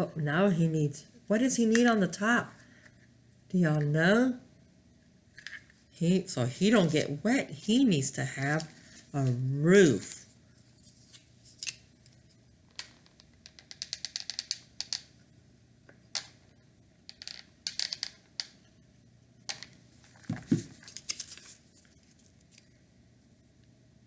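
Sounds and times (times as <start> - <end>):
wooden pieces clicking and scraping: 12.7 - 15.1, 17.1 - 18.6.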